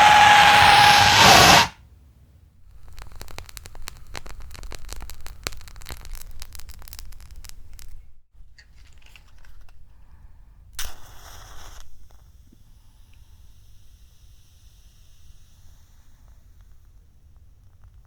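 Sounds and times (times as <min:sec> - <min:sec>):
short scraping hiss: 0:00.0 - 0:01.8
crackling clicks: 0:02.8 - 0:08.0.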